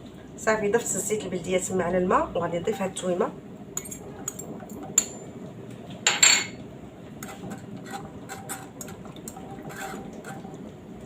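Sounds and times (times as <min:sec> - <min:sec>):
utensils clinking against pot: 0:06.1 - 0:06.6.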